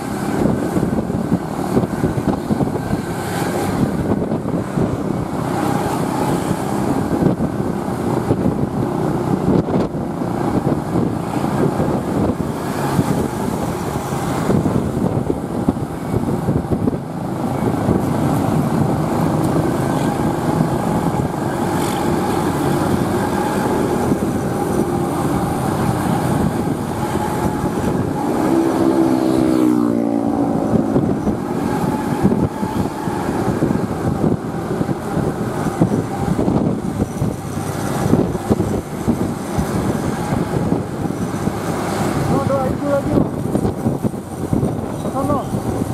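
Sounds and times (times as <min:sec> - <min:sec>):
vehicle passing with falling tone: 0:00.0 - 0:45.4
diesel bus engines rumbling: 0:00.0 - 0:45.9.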